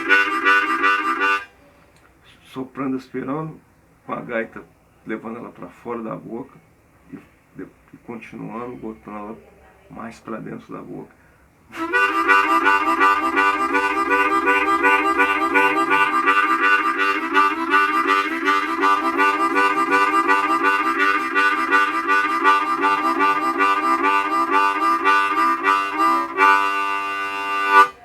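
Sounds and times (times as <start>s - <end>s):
harmonica train rhythm chords: 0.0s - 1.6s, 11.7s - 28.0s.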